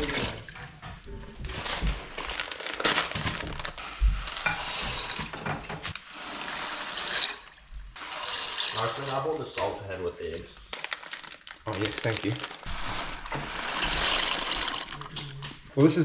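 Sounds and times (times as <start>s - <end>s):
sizzling crackle: 1.8s - 6.1s, 10.6s - 15.6s.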